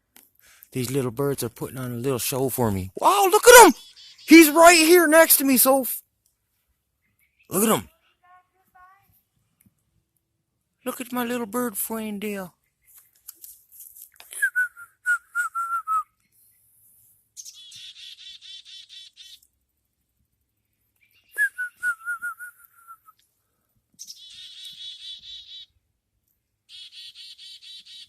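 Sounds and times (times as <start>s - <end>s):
small birds chattering trills: 0.8s - 5.8s, 17.4s - 19.6s, 24.0s - 25.8s, 26.7s - 28.0s
person whistling falling notes: 14.3s - 16.0s, 21.4s - 23.1s.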